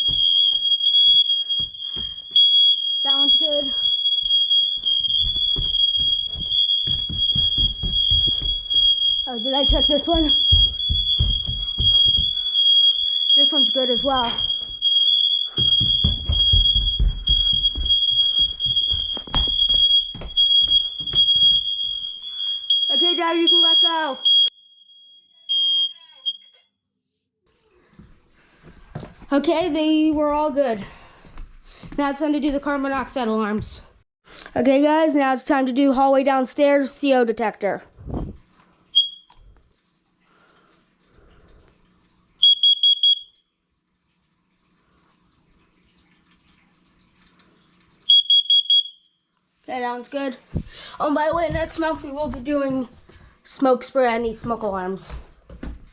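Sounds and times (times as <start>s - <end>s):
high-pitched detector beeps: 0.0s - 26.6s, 39.0s - 39.4s, 42.4s - 43.4s, 48.1s - 49.1s
smoke alarms shrill tone: 0.0s - 26.7s, 38.9s - 39.4s, 42.4s - 43.5s, 48.0s - 49.3s.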